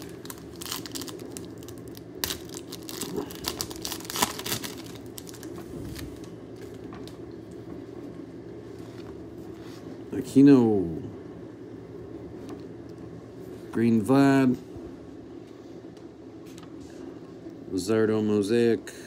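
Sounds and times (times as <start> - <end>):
cards rustling: 0.0 - 6.3
foil wrapper crinkling and tearing: 0.0 - 7.2
low background hum: 0.0 - 19.0.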